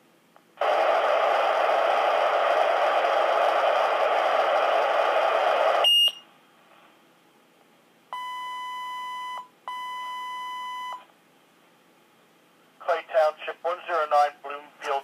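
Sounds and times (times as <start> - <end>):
radio static: 0.6 - 5.9, 12.8 - 15.0.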